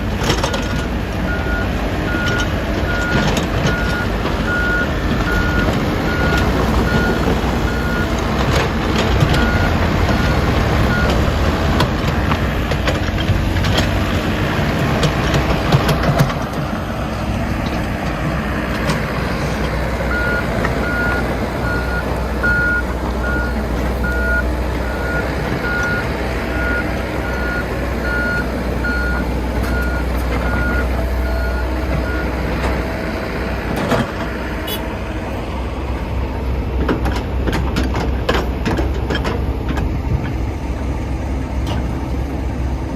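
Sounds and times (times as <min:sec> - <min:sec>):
diesel engine rumbling: 0:00.0 - 0:42.9
reversing alarm beeping: 0:00.4 - 0:08.2, 0:09.4 - 0:11.2, 0:20.1 - 0:32.5.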